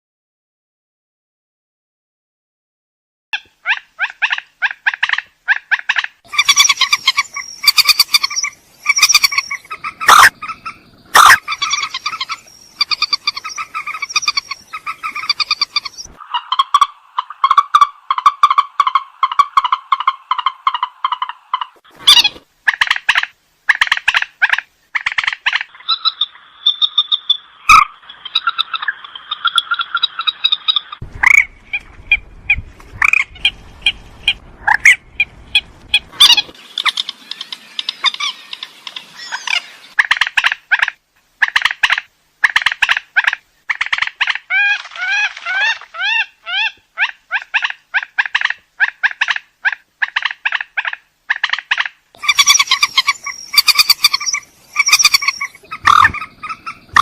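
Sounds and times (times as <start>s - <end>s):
rail bird calls: 3.4s - 57.0s
bird trilling: 6.3s - 22.4s, 51.4s - 57.0s
low rumble: 31.0s - 36.4s.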